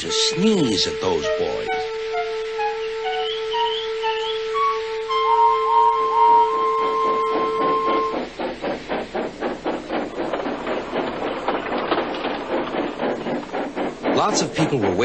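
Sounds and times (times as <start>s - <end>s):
held musical tones: 0.0s - 8.2s
steam hissing: 0.0s - 15.0s
steam locomotive chuffing: 0.0s - 15.0s.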